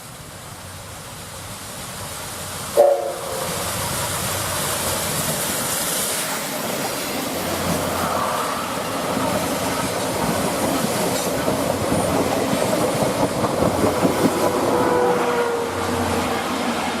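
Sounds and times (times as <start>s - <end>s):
train wheels clattering over rail joints: 9.1s - 14.6s.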